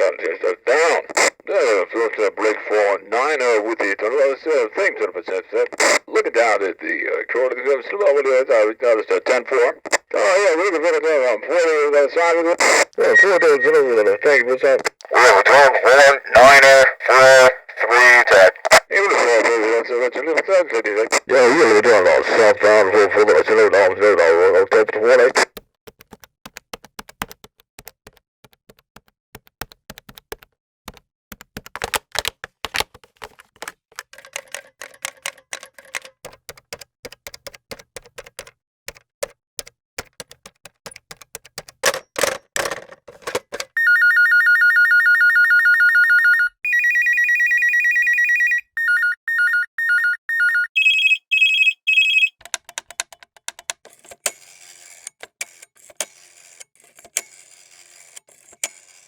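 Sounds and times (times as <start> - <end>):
typing clicks: 33.6 - 42.4
electronic telephone ring tones: 43.8 - 52.4
short rapid beeps: 48.8 - 52.3.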